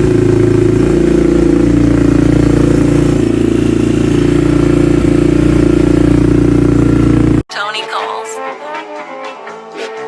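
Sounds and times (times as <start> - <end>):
atv engine running: 0.0 - 7.4.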